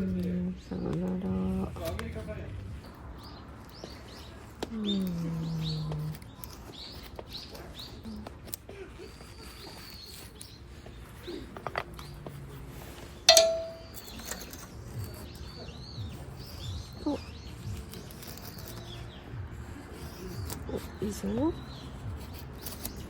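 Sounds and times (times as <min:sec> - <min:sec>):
small birds chirping: 0:00.0 - 0:23.0
sharp metallic clink: 0:13.3 - 0:14.4.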